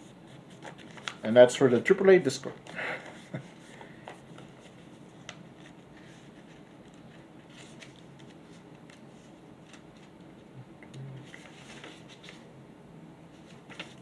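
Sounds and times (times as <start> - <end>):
paper rustling: 0.3 - 2.3, 3.0 - 10.2, 11.2 - 12.5, 13.3 - 14.0.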